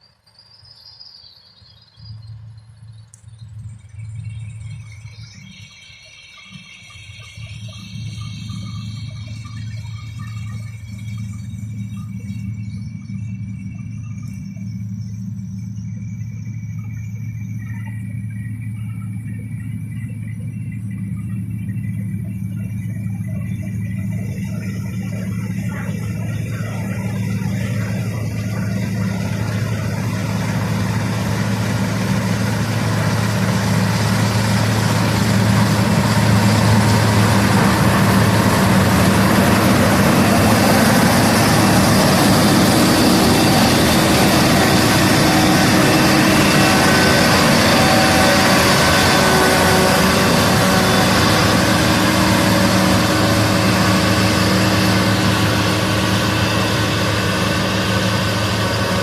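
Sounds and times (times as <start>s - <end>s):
diesel engine running: 1.9s - 59.0s.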